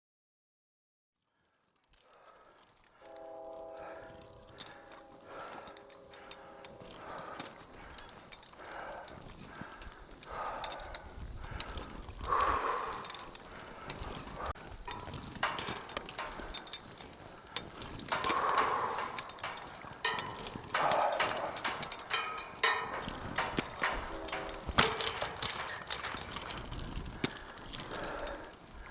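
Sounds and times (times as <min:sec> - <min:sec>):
person breathing hard: 0:01.4 - 0:28.9
climbing gear clanking on metal: 0:01.6 - 0:28.9.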